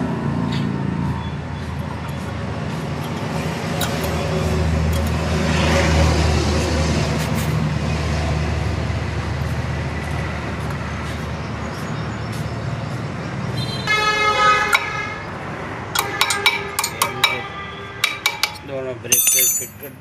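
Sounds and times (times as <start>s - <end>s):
vehicle engine humming: 0.0s - 19.3s
vehicle horn toot: 13.6s - 15.2s, 16.0s - 18.2s.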